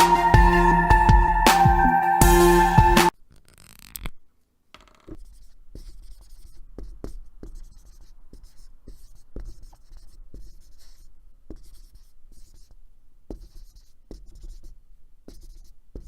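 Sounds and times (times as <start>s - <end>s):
marker writing on whiteboard: 5.1s - 16.0s.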